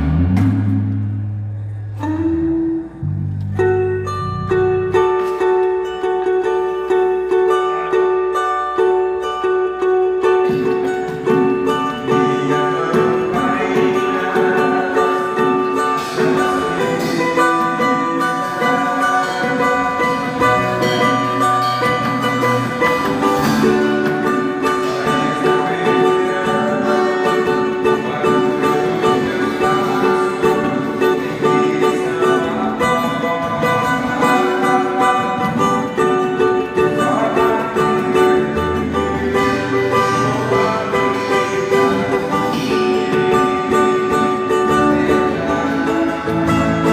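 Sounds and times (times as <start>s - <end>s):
deep bass notes: 0.0s - 8.1s, 19.8s - 46.9s
long held chords: 0.0s - 46.9s
plucked guitar-like strings: 0.0s - 46.9s.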